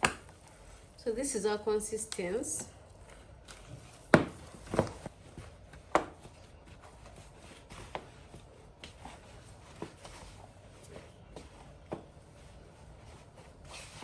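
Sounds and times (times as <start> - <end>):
sharp knocks of dough kneading: 0.0 - 0.3, 4.1 - 6.4
soft dough handling noise: 0.0 - 14.0.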